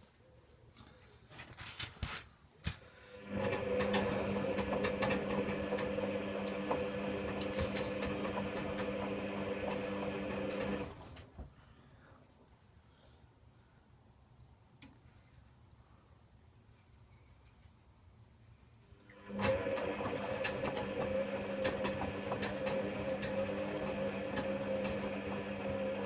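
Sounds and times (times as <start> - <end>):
washing machine motor humming: 3.2 - 11.1, 19.1 - 26.0.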